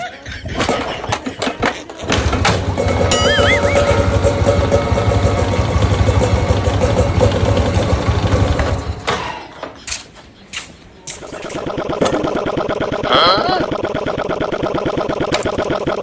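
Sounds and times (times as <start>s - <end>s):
rough engine idling rumble: 2.0s - 9.1s.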